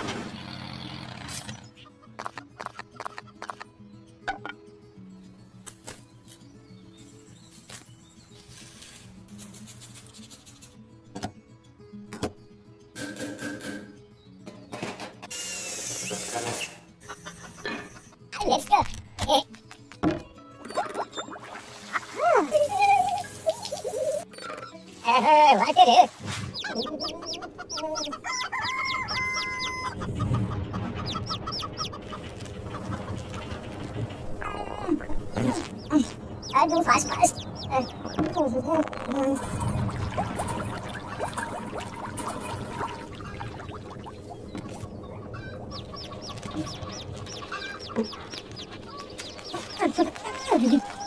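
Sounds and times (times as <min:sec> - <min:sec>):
chickens chirping: 0:26.4 - 0:51.0.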